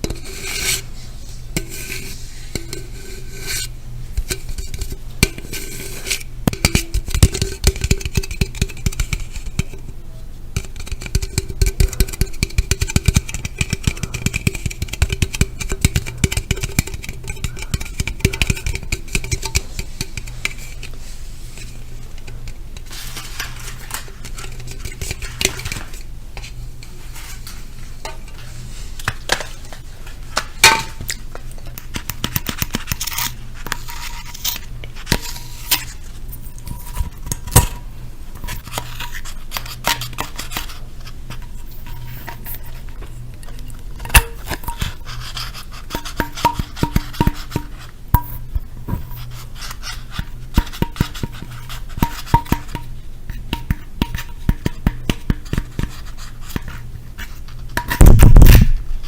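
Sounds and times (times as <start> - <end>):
steady low hum: 0.0 - 59.0
tapping on hard objects: 6.5 - 9.8, 10.6 - 20.6, 45.9 - 49.2, 50.2 - 52.9, 53.5 - 56.8, 57.8 - 58.8.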